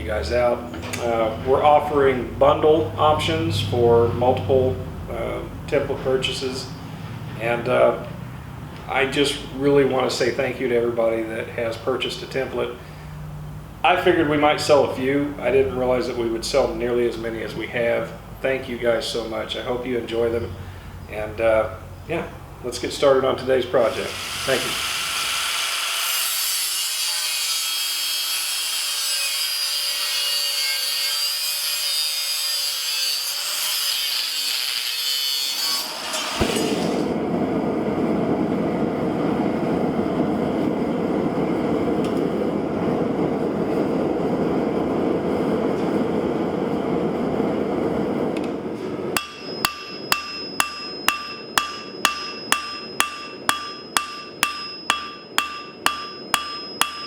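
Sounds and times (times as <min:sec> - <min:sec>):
hammer blows on steel: 0:49.2 - 0:57.0.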